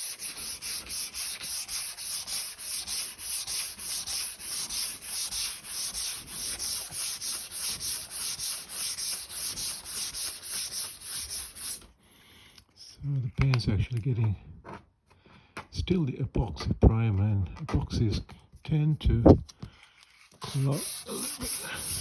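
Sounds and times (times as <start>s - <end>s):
sandpaper rubbing on car panel: 0.0s - 11.8s, 20.4s - 22.0s.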